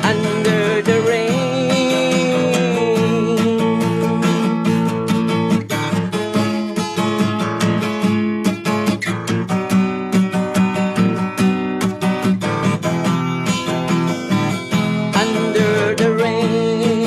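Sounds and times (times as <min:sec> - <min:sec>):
acoustic guitar strumming chords: 0:00.0 - 0:17.0.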